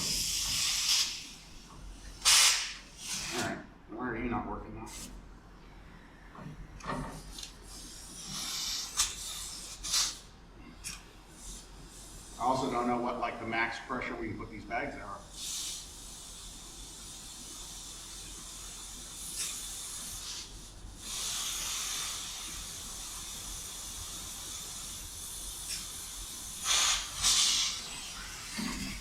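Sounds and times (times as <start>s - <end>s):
compressed air hissing: 0.0s - 3.6s, 7.4s - 10.3s, 11.3s - 14.0s, 15.2s - 29.0s.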